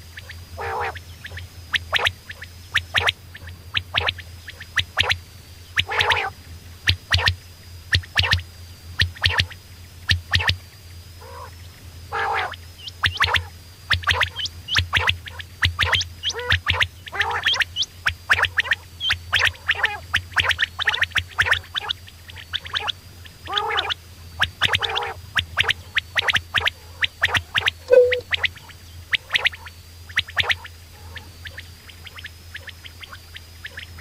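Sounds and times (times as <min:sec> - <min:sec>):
steady low hum: 0:00.0 - 0:34.0
quail chattering calls: 0:00.6 - 0:05.2, 0:05.8 - 0:07.3, 0:11.2 - 0:11.5, 0:12.1 - 0:22.0, 0:22.6 - 0:32.7.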